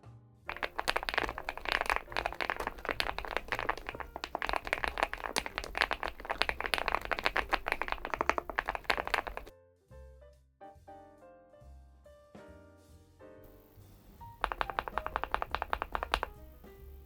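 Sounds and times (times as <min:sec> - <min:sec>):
mechanical keyboard typing: 0:00.5 - 0:09.5, 0:14.3 - 0:16.4.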